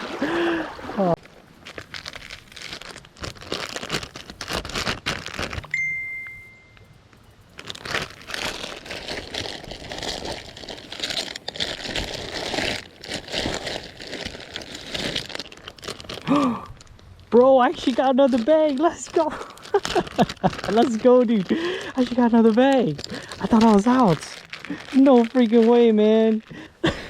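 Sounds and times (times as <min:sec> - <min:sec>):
plastic bag crinkling: 0:01.2 - 0:06.3, 0:07.4 - 0:27.0
brief high tone: 0:05.7 - 0:06.9.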